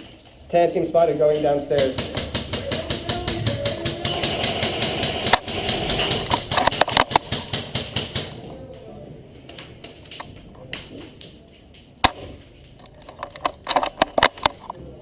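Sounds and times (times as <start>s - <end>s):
airsoft guns firing: 1.3s - 8.5s.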